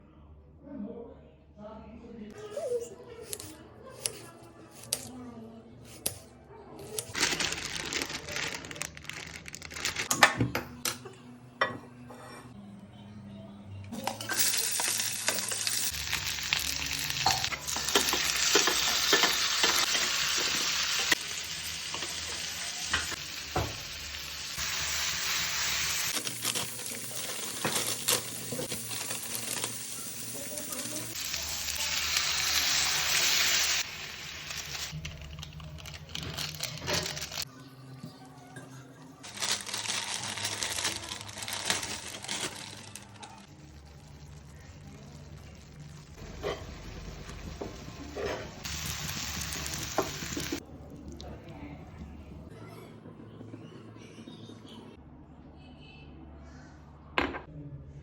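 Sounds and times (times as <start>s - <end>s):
vegetables sizzling in a pan: 14.0s - 35.0s, 43.6s - 50.6s.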